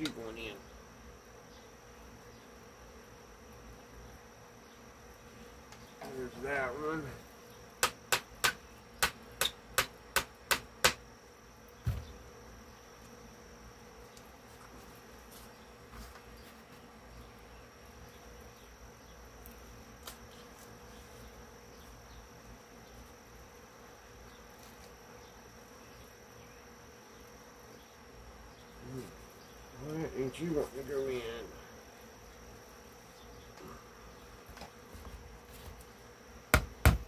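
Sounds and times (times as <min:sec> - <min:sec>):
faint steady hum: 0:00.0 - 0:37.0
dull thump: 0:11.8 - 0:12.2.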